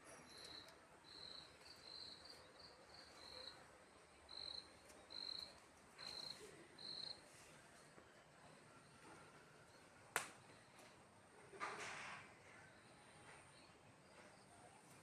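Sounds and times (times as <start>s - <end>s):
insect chirping: 4.3s - 5.5s.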